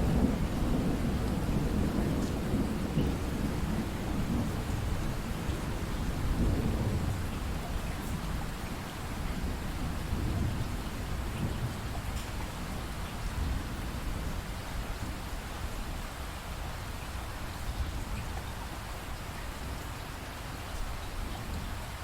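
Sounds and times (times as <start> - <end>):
rumble of thunder: 0.0 - 16.0
steady rainfall: 0.0 - 22.0.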